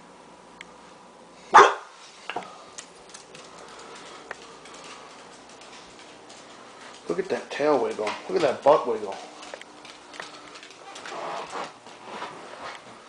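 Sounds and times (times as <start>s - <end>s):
dog barking: 1.5s - 1.9s.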